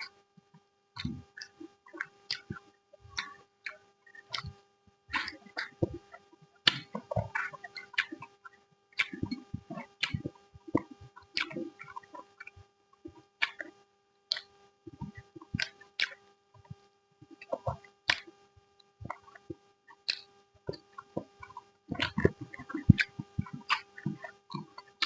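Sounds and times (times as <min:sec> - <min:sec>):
faint steady hum: 0:00.0 - 0:25.0
wet chewing and lip smacks: 0:03.2 - 0:06.1, 0:13.2 - 0:18.3, 0:19.0 - 0:25.0.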